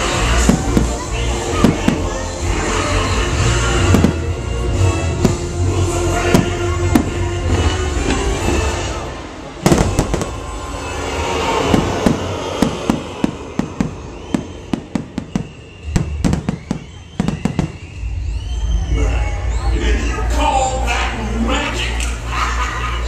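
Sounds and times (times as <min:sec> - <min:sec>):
show music: 0:00.0 - 0:23.0
fireworks bangs and pops: 0:00.2 - 0:02.2, 0:03.8 - 0:04.4, 0:05.2 - 0:05.6, 0:06.2 - 0:08.7, 0:09.6 - 0:10.4, 0:11.7 - 0:18.0.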